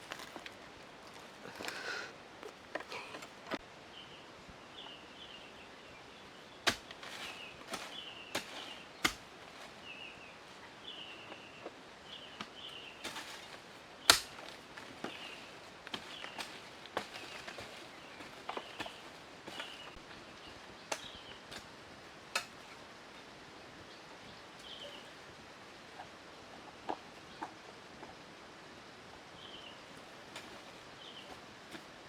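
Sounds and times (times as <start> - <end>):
outdoor background noise: 0.0 - 32.0.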